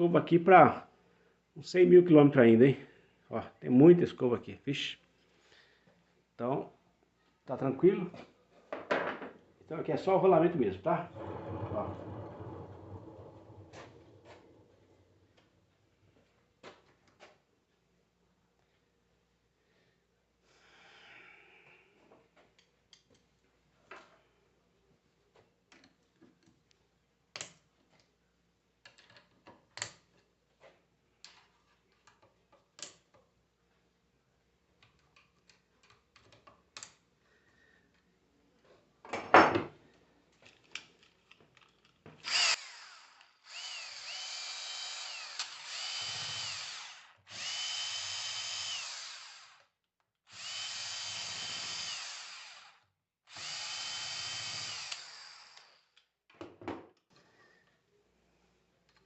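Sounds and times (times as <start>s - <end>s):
power tool motor whine: 42.2s - 49.7s, 50.3s - 55.9s.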